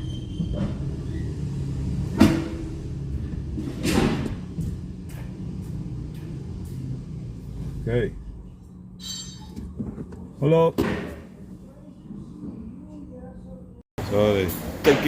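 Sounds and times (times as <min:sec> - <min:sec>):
car engine idling: 0:00.8 - 0:09.0.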